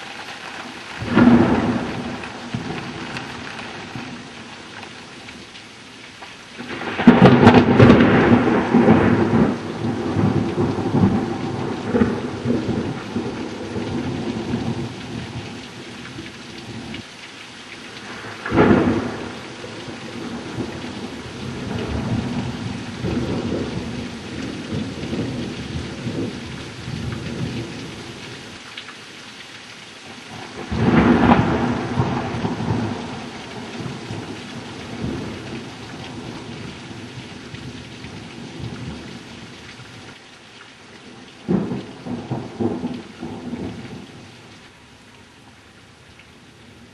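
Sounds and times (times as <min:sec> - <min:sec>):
steady rain: 0:00.0 - 0:46.9
thunder cracking and rumbling: 0:01.0 - 0:04.4, 0:06.6 - 0:15.6, 0:18.1 - 0:28.2, 0:30.3 - 0:39.1, 0:41.5 - 0:44.0.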